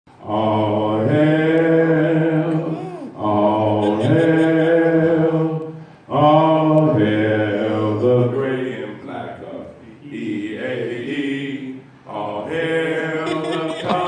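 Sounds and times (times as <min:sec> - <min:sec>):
low male chanting: 0:00.2 - 0:05.6.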